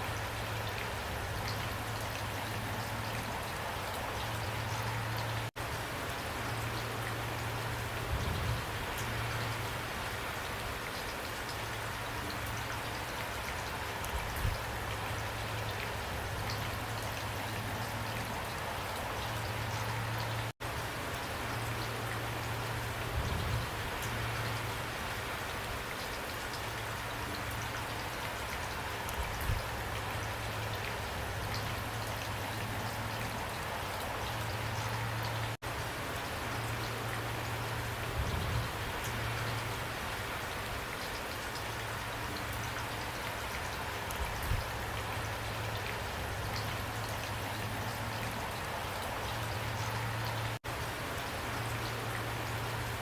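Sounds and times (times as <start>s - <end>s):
rain falling: 0.0s - 53.0s.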